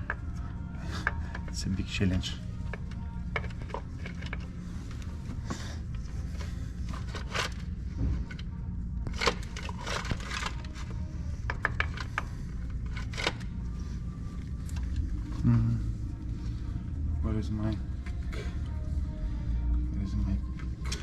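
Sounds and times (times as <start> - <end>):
steady low hum: 0.0 - 21.0
metal clicks and scrapes of tools: 9.0 - 13.7.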